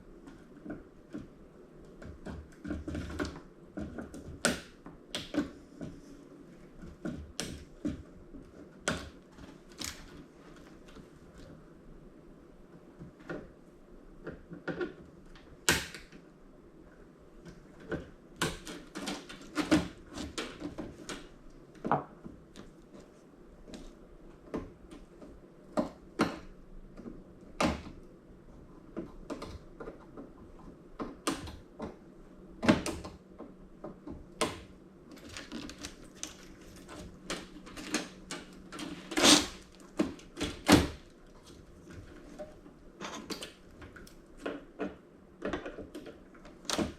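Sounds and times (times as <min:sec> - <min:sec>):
wire cutters snipping wires: 0:35.2 - 0:40.9.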